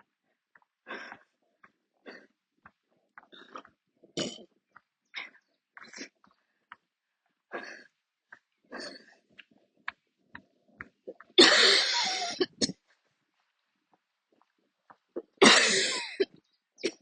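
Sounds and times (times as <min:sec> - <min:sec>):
woman coughing harshly: 0:11.4 - 0:12.8, 0:15.4 - 0:17.0.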